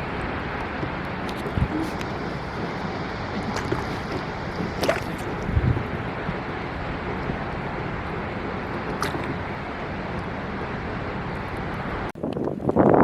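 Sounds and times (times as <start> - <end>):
rushing water around boat: 0.0 - 13.0.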